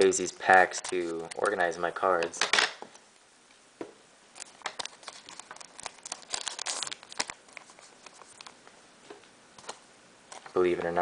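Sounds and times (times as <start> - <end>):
foil wrapper crinkling: 4.4 - 8.6.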